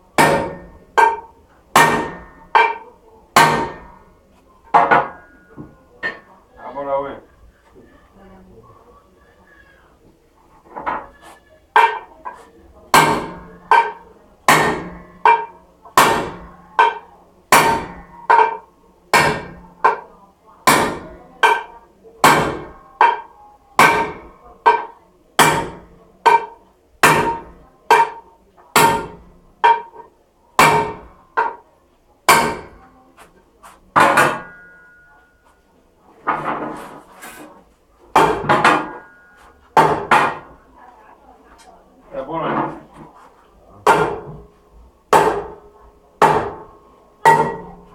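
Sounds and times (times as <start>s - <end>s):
hammer striking metal wheel rim: 0.1s - 4.1s, 13.0s - 31.6s, 32.3s - 32.8s, 34.0s - 35.2s, 38.1s - 40.6s, 43.9s - 44.5s, 45.1s - 47.9s.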